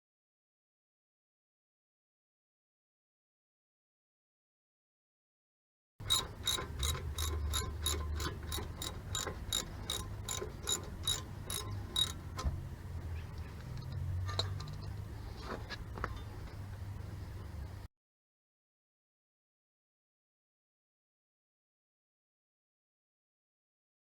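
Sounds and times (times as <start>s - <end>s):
ratchet wrench clicking: 6.0s - 12.3s.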